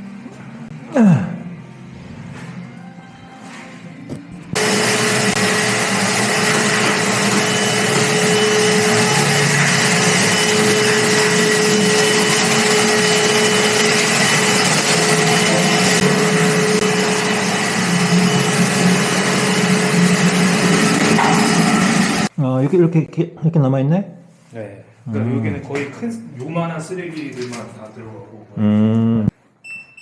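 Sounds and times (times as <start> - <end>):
shop vacuum running: 0.0 - 22.3.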